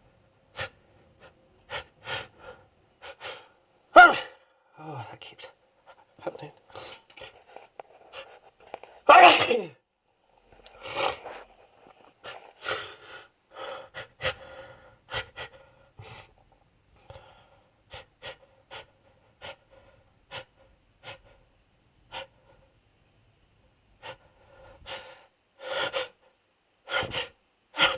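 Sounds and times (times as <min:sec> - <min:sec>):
man gasping breaths: 0:12.6 - 0:16.3.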